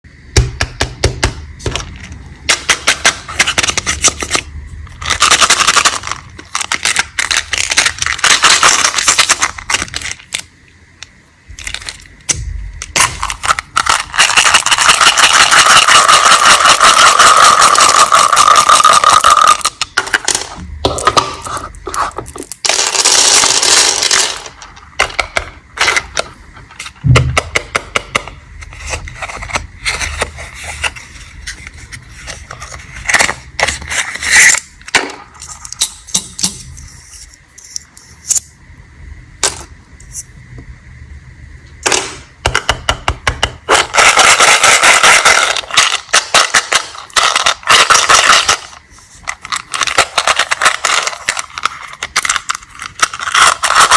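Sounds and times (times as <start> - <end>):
hard candies clattering: 1.7 - 10.5, 11.5 - 12.1, 12.8 - 27.0, 43.7 - 53.9
candy packaging crackling: 1.8 - 27.0, 43.7 - 53.9.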